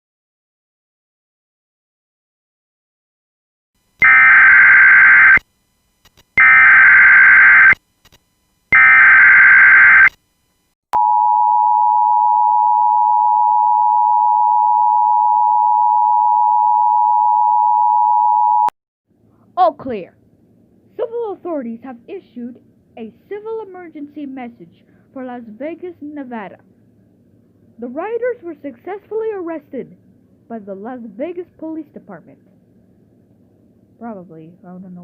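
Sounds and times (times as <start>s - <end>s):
screeching data bursts: 4.0s - 5.4s, 6.4s - 7.8s, 8.8s - 10.1s.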